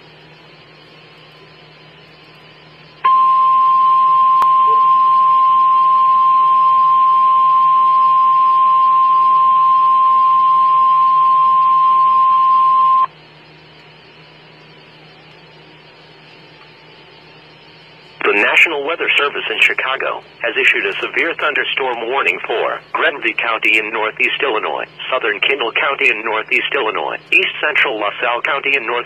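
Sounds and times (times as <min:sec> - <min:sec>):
steady alarm tone: 0:02.9 - 0:13.1
faint radio hiss: 0:18.1 - 0:29.0.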